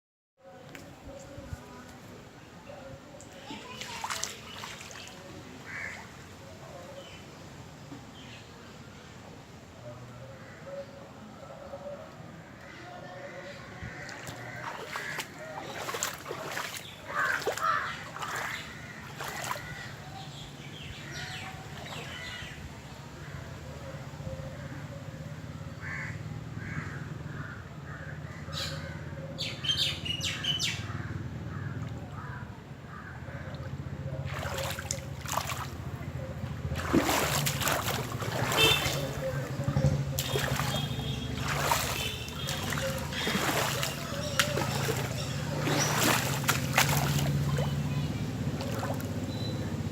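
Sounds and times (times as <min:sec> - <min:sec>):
faint distant voices: 0:00.4 - 0:49.9
water splashing and sloshing: 0:03.3 - 0:06.4, 0:13.4 - 0:22.7, 0:33.2 - 0:49.9
crows cawing: 0:05.7 - 0:06.0, 0:13.9 - 0:20.0, 0:25.8 - 0:28.4, 0:36.8 - 0:39.6, 0:40.2 - 0:47.3.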